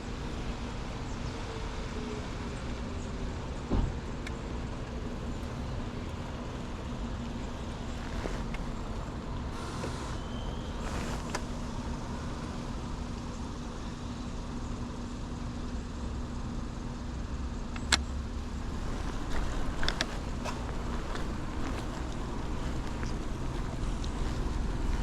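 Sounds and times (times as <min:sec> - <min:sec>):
bicycle rumble on wet pavement: 0:05.2 - 0:12.9, 0:18.4 - 0:25.0.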